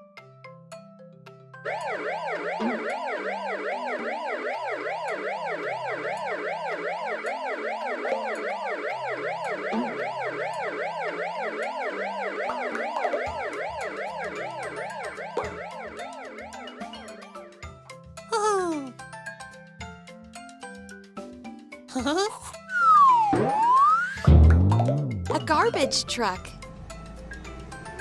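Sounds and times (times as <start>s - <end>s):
ambulance siren wailing: 1.6s - 17.5s, 22.6s - 24.4s
children's background music: 12.4s - 28.0s.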